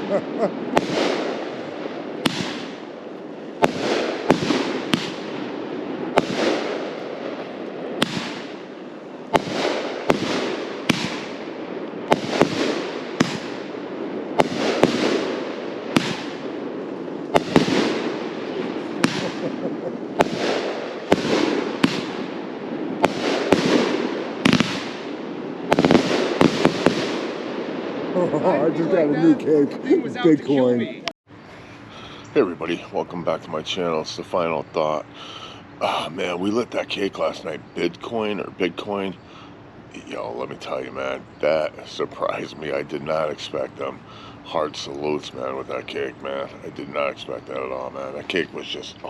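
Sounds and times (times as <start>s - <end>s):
firework bangs: 0.0s - 29.4s, 31.9s - 49.0s
rumbling echo: 0.0s - 29.8s.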